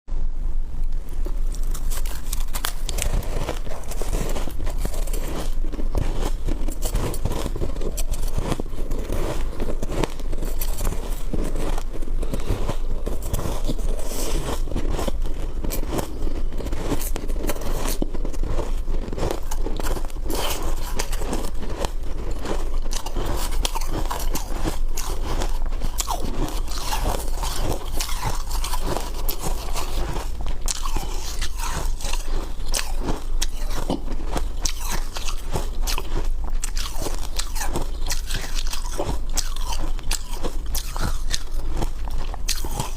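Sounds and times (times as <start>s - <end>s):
low hum: 0.1s - 17.3s
ice crunching and chewing: 1.0s - 42.9s.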